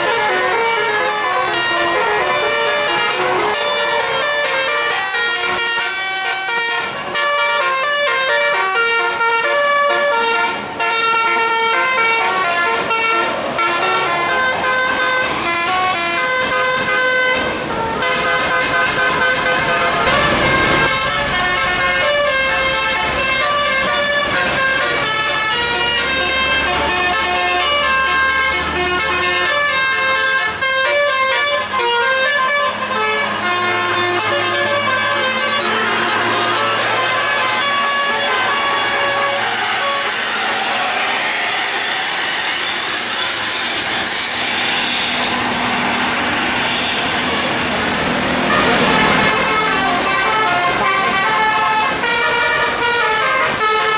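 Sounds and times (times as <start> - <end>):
musical air horn tune: 0.0 - 45.7, 46.5 - 53.9
bus passing: 0.0 - 53.9
low engine hum: 19.0 - 22.1.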